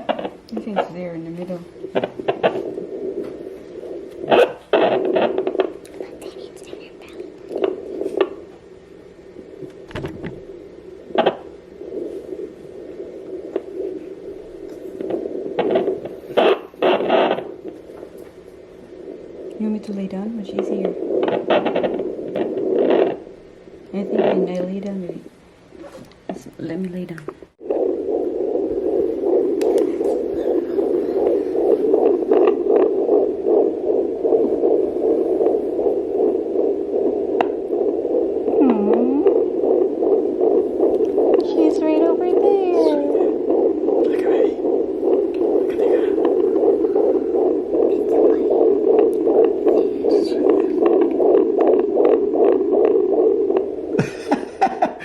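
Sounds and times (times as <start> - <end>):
doppler static whoosh: 0.0 - 26.0, 26.6 - 54.0
probe knocks: 9.6 - 10.5.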